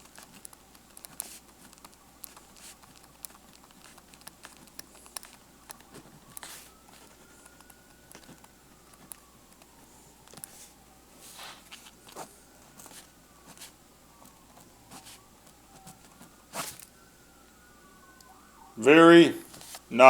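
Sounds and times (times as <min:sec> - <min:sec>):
pen scratching on paper: 0:00.0 - 0:07.4, 0:10.5 - 0:13.8, 0:15.8 - 0:16.8.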